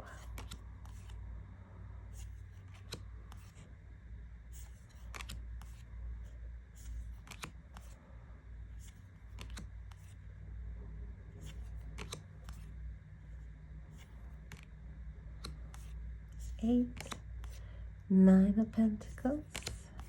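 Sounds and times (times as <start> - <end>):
low steady hum: 0.0 - 20.0
cards flipping: 0.2 - 1.2, 2.1 - 3.6, 4.5 - 8.0, 8.7 - 10.2, 11.4 - 12.8, 13.9 - 14.7, 15.4 - 17.6, 19.4 - 20.0.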